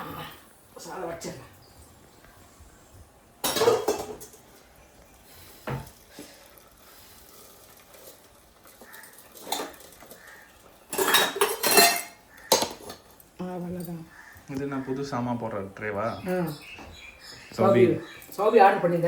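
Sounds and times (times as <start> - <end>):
metal pots clattering: 3.4 - 4.7, 7.2 - 14.3.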